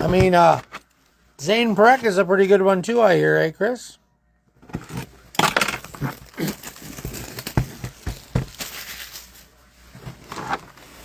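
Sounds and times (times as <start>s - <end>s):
foil wrapper crinkling and tearing: 5.8s - 7.6s.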